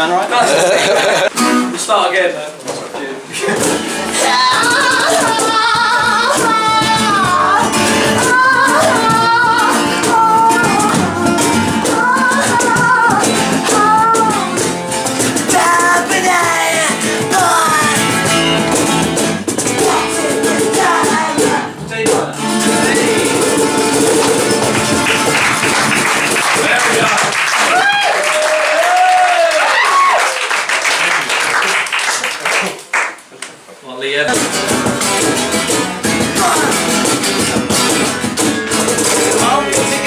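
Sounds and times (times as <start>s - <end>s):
strummed acoustic guitar: 0.4s - 2.2s, 3.3s - 27.3s, 34.3s - 40.0s.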